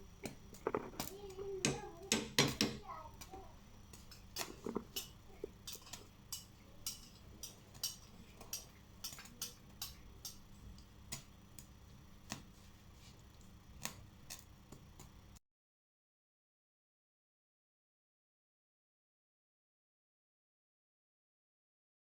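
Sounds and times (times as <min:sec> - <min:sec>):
faint low hum: 0:00.0 - 0:15.4.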